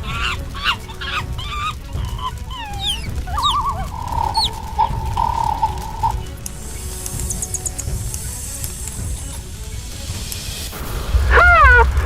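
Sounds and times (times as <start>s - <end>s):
cartoon clucking calls: 0.0s - 6.3s
falling whistles: 0.0s - 7.9s
held whistle-like tone: 2.2s - 7.8s
wobbling warble: 2.6s - 6.3s.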